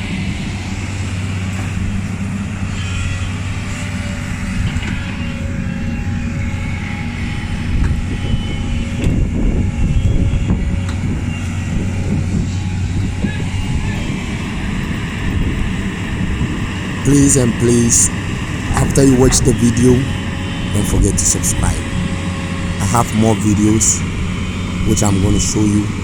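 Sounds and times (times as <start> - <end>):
diesel excavator engines humming: 15.5 - 26.0.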